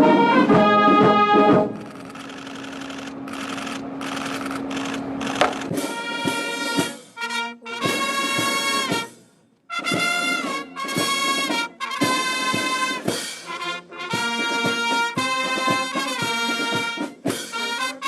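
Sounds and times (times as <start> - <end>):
brass band playing chords: 0.0 - 1.8, 5.4 - 18.0.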